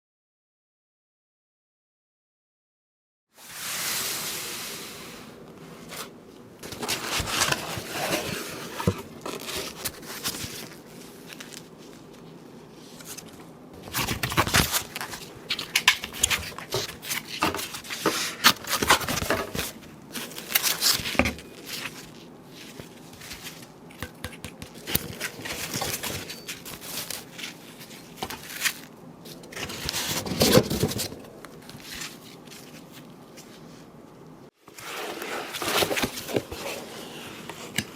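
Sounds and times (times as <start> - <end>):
packaging rustling: 6.6 - 12.3, 12.9 - 23.9, 24.6 - 33.7.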